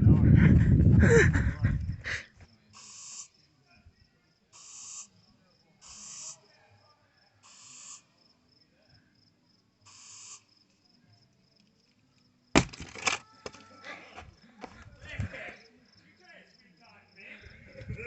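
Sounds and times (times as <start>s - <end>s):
insect trill: 2.0s - 14.6s, 15.3s - 18.0s
short firework spurts: 2.8s - 3.3s, 4.6s - 5.1s, 5.8s - 6.4s, 7.4s - 8.1s, 9.9s - 10.5s.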